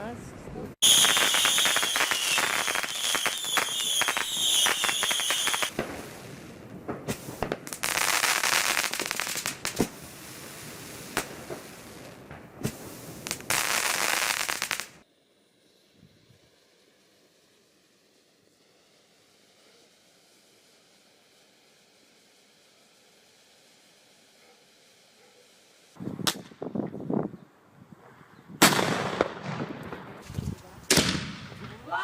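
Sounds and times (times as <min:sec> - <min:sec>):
fireworks crackling: 0:00.7 - 0:27.3, 0:27.9 - 0:32.0
high firework whistle: 0:00.8 - 0:05.8, 0:12.7 - 0:26.4
sharp firework bangs: 0:00.8 - 0:15.0, 0:26.0 - 0:26.9, 0:28.6 - 0:31.9
firework hissing: 0:00.8 - 0:26.8.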